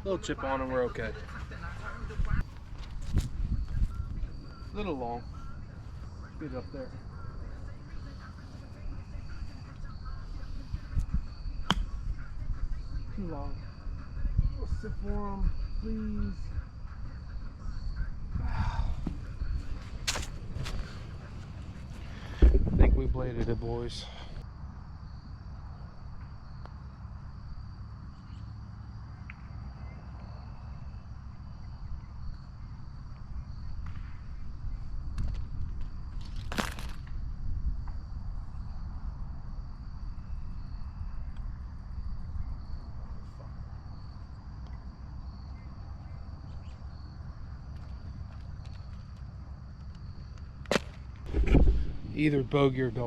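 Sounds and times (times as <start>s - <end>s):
low wind rumble: 0.0s - 53.0s
high-pitched insect drone: 3.1s - 22.3s.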